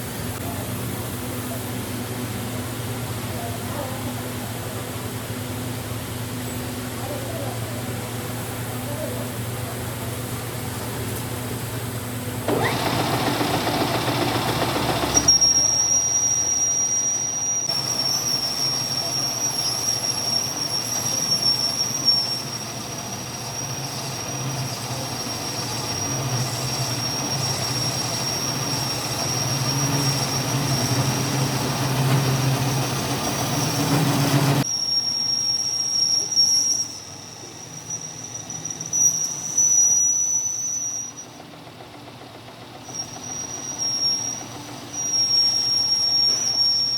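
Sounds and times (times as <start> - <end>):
high-pitched cutting whine: 12.5 - 38.5.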